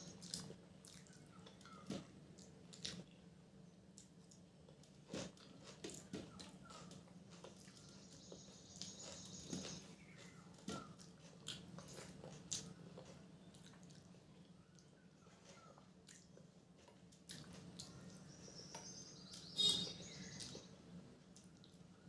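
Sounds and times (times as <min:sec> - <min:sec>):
chewing: 0:00.0 - 0:03.3, 0:03.9 - 0:19.4.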